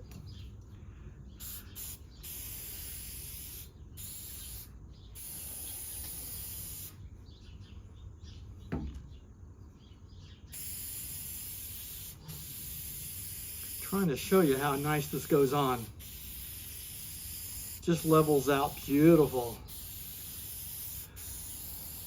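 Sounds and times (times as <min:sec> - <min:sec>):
spray hissing: 0:01.4 - 0:07.0, 0:10.6 - 0:22.0.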